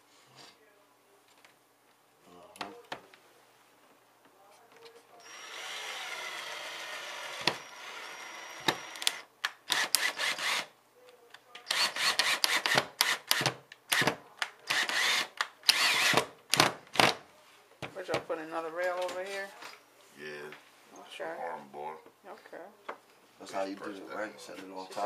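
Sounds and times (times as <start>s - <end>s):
power drill driving screws: 5.2s - 10.7s, 11.7s - 16.3s.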